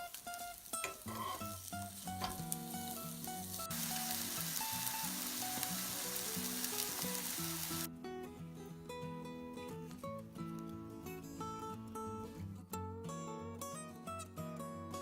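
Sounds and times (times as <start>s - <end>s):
food sizzling in a frying pan: 0.0s - 7.9s.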